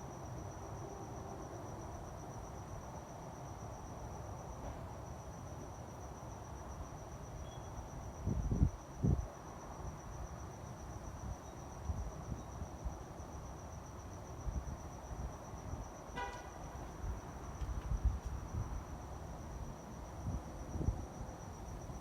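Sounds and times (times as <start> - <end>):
crickets trilling: 0.2 - 22.0
short horn toot: 16.2 - 16.6.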